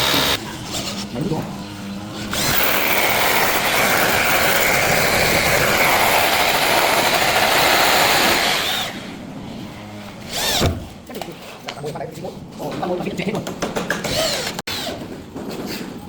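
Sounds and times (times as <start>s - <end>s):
power saw cutting log: 0.0s - 0.4s, 2.1s - 9.0s.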